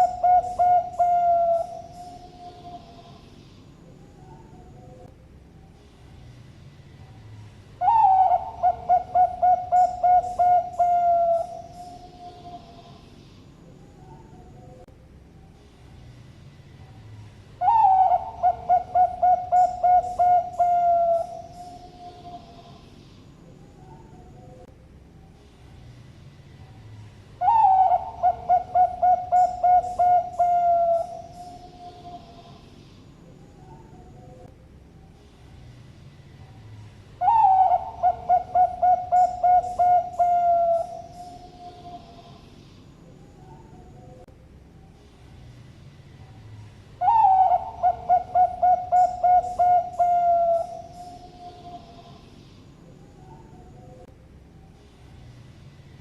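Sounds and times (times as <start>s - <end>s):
dove cooing: 0.0s - 3.2s, 7.8s - 13.0s, 17.6s - 22.8s, 27.4s - 32.6s, 37.2s - 42.4s, 47.0s - 52.2s.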